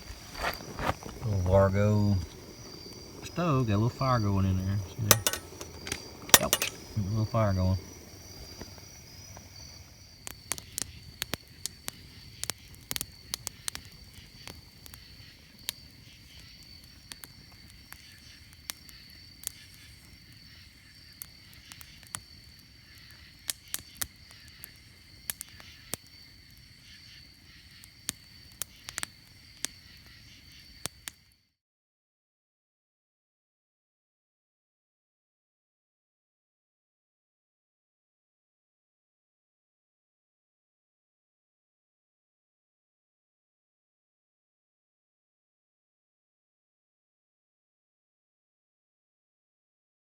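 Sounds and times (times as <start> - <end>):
wood fire crackling and popping: 0.0 - 31.2
night insects droning: 0.0 - 31.6.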